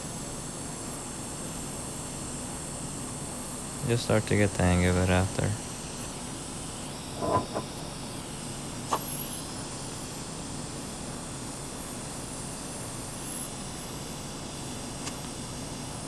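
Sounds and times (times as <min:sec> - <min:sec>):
torch hissing: 0:03.7 - 0:08.0.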